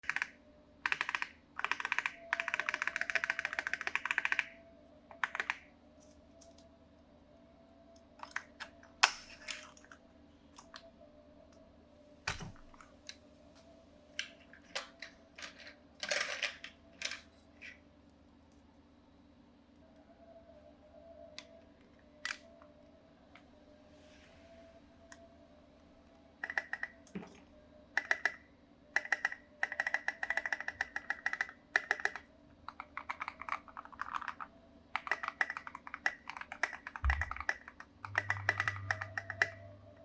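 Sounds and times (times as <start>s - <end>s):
mechanical keyboard typing: 0.0s - 5.6s, 26.4s - 27.0s, 28.0s - 28.4s, 29.0s - 40.0s.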